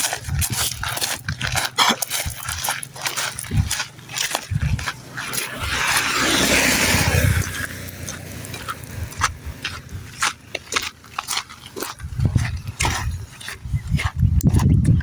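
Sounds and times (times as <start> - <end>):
vehicle passing close by: 3.2 - 10.6.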